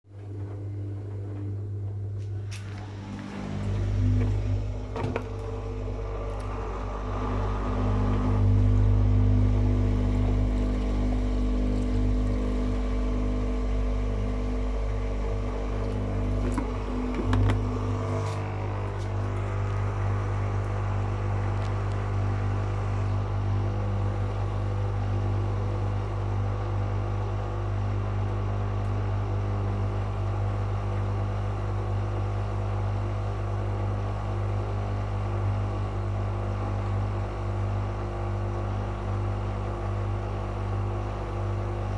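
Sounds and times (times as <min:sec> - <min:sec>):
washing machine humming: 0:00.0 - 0:41.9
washing machine drum knocks: 0:16.0 - 0:18.0.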